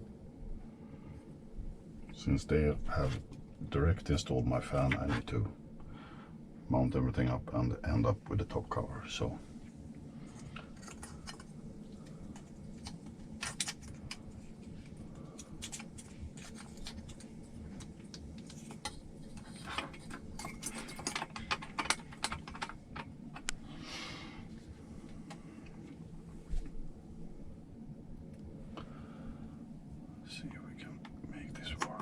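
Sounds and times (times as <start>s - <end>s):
small plastic parts clicking: 17.8s - 23.6s.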